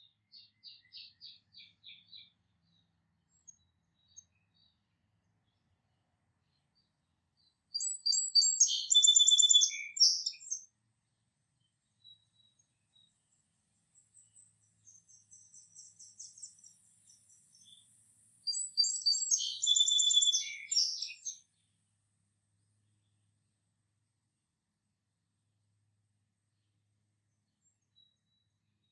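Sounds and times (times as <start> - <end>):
faint high bird chirping: 0.0 - 5.7, 6.4 - 10.7, 11.6 - 21.8, 26.5 - 28.9
songbird trilling song: 0.0 - 5.7, 6.4 - 10.8, 11.6 - 21.8, 26.6 - 28.9.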